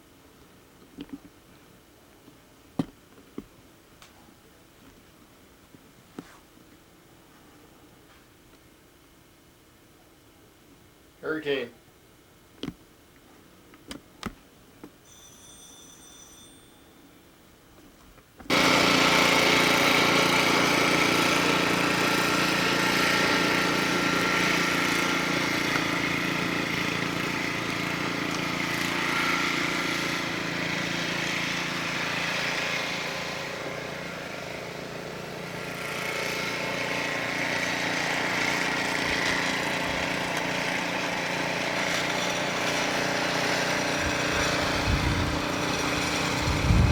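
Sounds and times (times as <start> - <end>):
snowblower engine running: 18.5 - 46.9.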